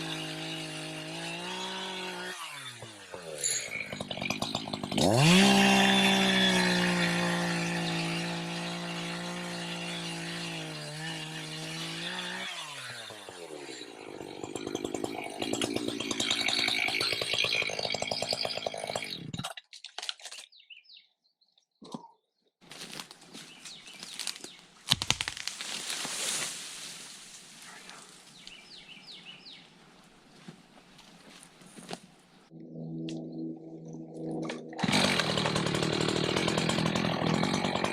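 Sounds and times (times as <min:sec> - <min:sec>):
chainsaw cutting through wood: 0:00.0 - 0:19.5, 0:34.2 - 0:37.9.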